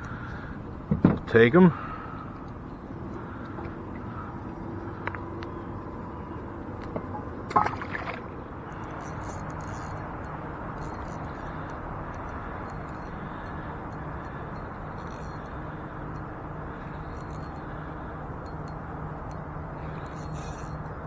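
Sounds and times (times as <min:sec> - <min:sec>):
river water rushing: 0:06.8 - 0:08.4.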